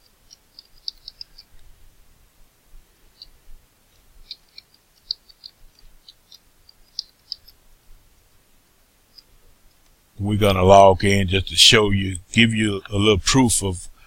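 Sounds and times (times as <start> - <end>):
mouse and keyboard clicks: 0.0 - 1.6, 4.2 - 7.6.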